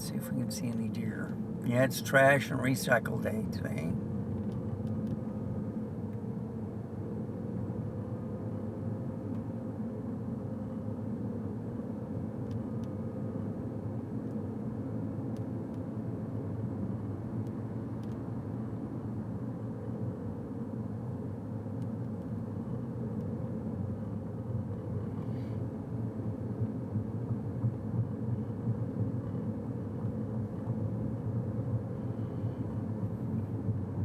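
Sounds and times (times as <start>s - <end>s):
car engine and tyre rumble: 0.0s - 34.0s
faint constant hum: 0.0s - 34.0s.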